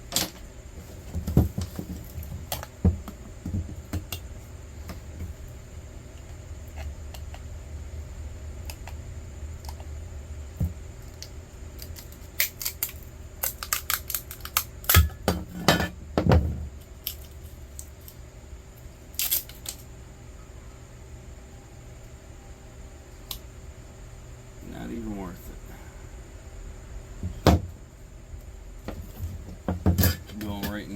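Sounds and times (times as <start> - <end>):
scrap metal clinking and clattering: 29.2 - 30.8.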